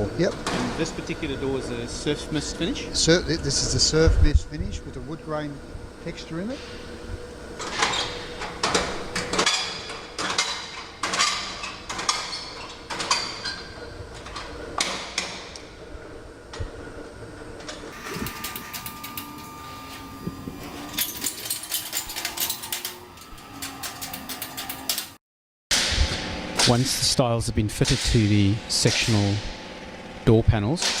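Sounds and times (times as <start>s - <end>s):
steady machine whine: 0.0s - 10.2s, 15.6s - 25.2s
rattling clicks: 20.7s - 25.2s.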